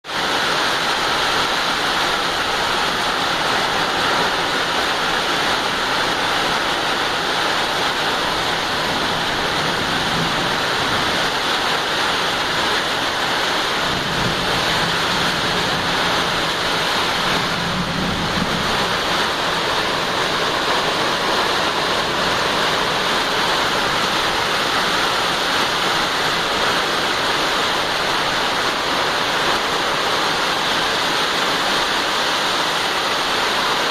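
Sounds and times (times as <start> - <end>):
heavy rain: 0.0 - 33.9.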